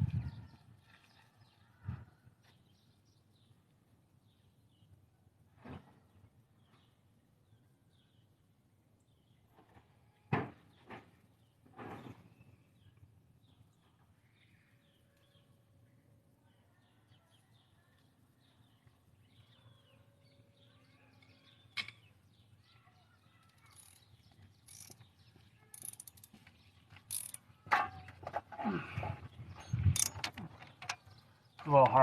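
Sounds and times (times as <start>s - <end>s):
birds chirping faintly: 10.7s - 32.0s
socket ratchet clicking: 23.7s - 24.0s, 24.7s - 25.0s, 25.8s - 26.3s, 27.1s - 27.4s.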